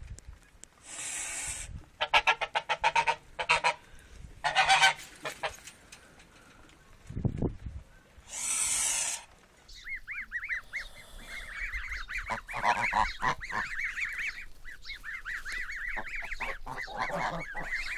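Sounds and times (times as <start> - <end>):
goose hissing: 8.3 - 17.9
goslings peeping: 9.7 - 17.9.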